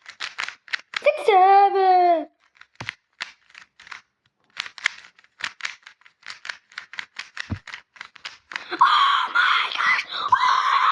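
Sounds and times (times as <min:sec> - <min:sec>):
dry clicks and scrapes: 0:00.0 - 0:01.1, 0:02.3 - 0:08.8.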